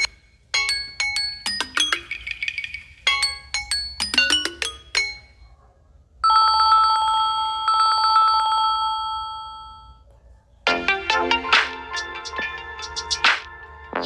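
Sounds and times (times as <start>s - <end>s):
plucked ringtone melody: 0.0s - 5.4s, 10.7s - 14.0s
old-style telephone ring: 6.2s - 10.0s.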